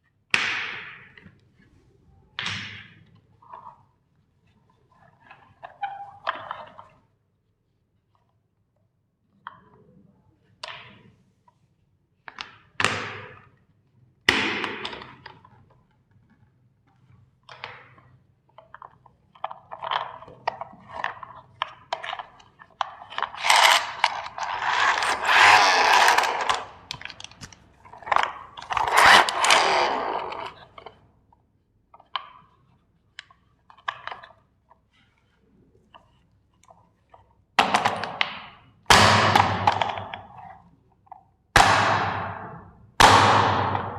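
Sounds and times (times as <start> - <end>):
plastic toys cracking and crunching: 21.7 - 30.9.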